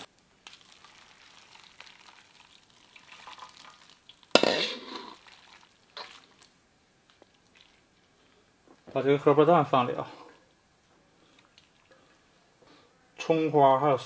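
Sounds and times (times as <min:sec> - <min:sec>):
broth bubbling and sizzling: 0:00.0 - 0:08.9, 0:09.8 - 0:12.4
cookware clattering: 0:04.4 - 0:05.2.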